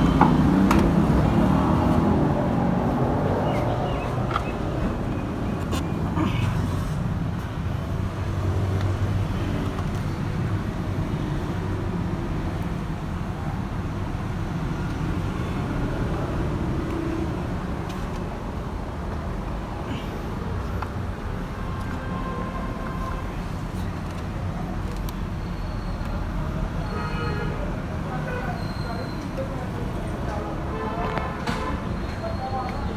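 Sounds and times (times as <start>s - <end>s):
vehicle rumble: 0.0s - 26.9s.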